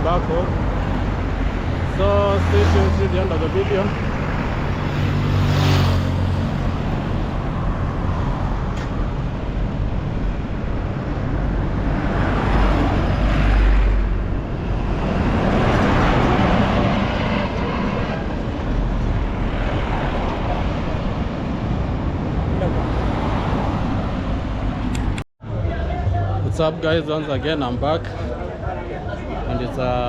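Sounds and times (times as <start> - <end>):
vehicles passing: 0.0 - 30.0.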